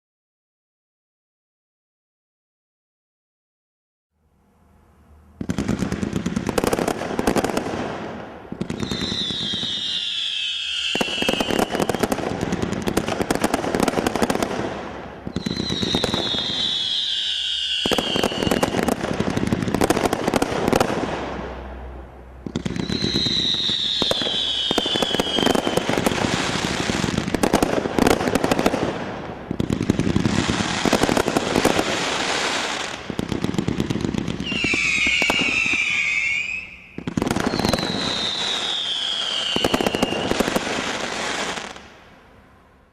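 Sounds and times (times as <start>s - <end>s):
firework bangs and crackles: 5.4s - 42.1s
firework whistle falling in pitch: 8.7s - 12.1s, 15.3s - 18.8s, 22.7s - 26.0s, 34.4s - 40.4s.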